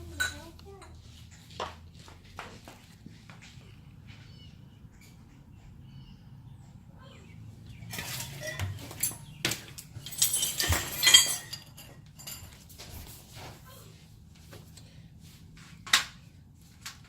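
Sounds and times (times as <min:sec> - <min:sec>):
metal tools clinking and rattling: 0:07.8 - 0:13.1.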